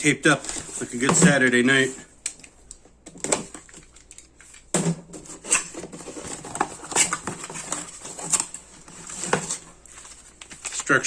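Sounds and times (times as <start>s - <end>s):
packaging rustling: 3.3s - 11.0s.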